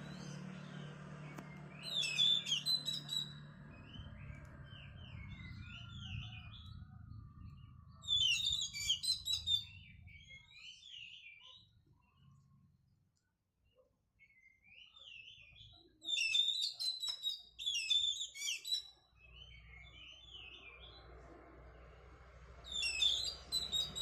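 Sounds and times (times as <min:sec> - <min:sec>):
low steady hum: 0:00.0 - 0:10.6
bird singing chattering notes: 0:00.0 - 0:11.2.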